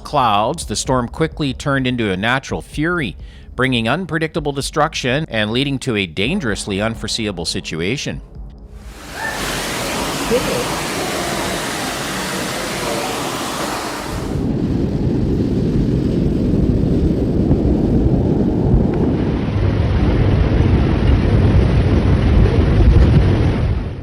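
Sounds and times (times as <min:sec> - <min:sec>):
wind and rain hiss: 0:08.8 - 0:23.8
wind buffeting microphone: 0:08.8 - 0:24.0.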